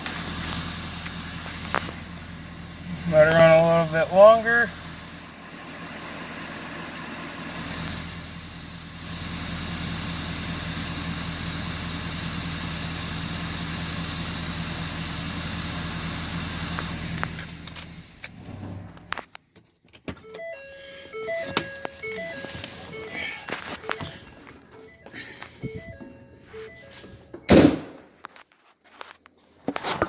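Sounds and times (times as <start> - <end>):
truck engine idling: 0.0 - 19.2, 20.2 - 27.6
short electronic tune: 23.8 - 27.6.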